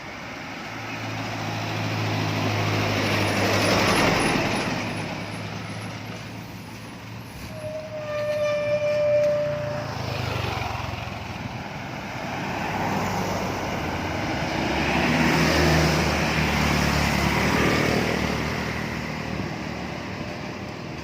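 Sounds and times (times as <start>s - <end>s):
vehicle passing on road: 0.0s - 7.9s, 8.7s - 21.0s
car horn: 7.6s - 10.1s.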